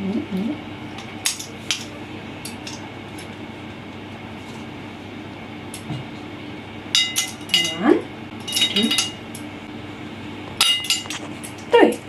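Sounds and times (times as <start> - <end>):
low steady hum: 0.0 - 12.0
utensils clinking against bowl: 7.0 - 9.4, 10.6 - 12.0.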